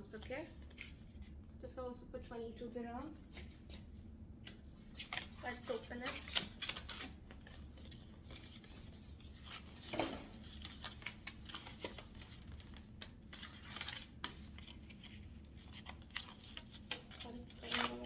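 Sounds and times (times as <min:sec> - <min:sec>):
packaging rustling and tearing: 0:04.8 - 0:18.0.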